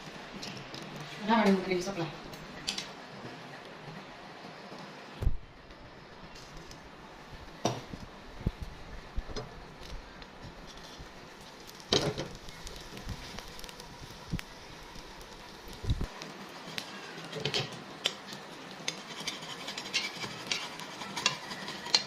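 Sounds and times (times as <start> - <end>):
eggs sizzling in hot oil: 6.3 - 22.0.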